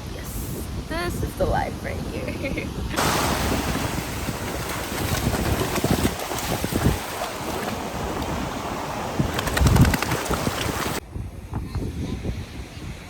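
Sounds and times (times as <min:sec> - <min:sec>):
wind buffeting microphone: 0:00.0 - 0:13.0
surf washing: 0:00.9 - 0:11.0.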